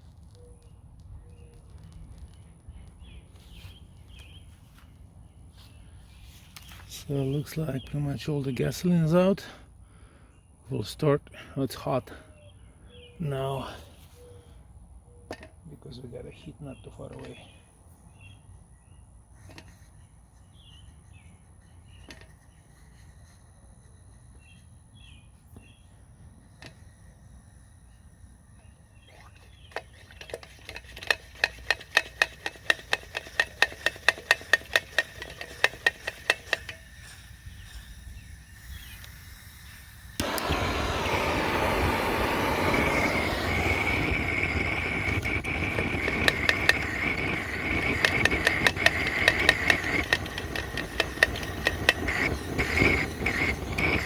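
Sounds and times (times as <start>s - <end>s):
quick regular clicks: 29.7s - 36.9s, 40.2s - 54.0s
blow torch flame hissing: 31.2s - 54.0s.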